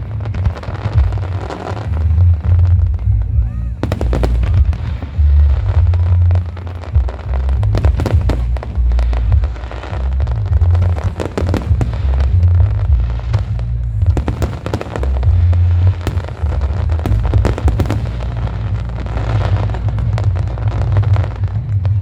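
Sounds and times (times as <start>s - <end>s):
deep rumble of booms: 0.0s - 22.0s
fireworks bangs and crackling: 0.0s - 22.0s.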